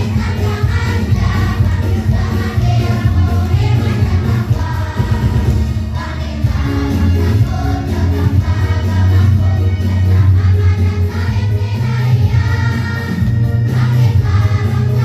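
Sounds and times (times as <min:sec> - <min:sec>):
backing track with heavy bass line: 0:00.0 - 0:15.0
choir singing: 0:00.0 - 0:15.0.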